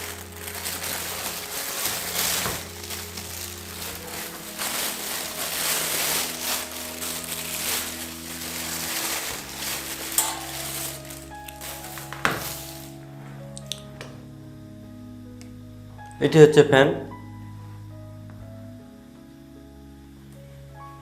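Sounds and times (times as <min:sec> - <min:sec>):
plastic bag crinkling: 0:00.0 - 0:13.8
soft background music: 0:00.0 - 0:21.0.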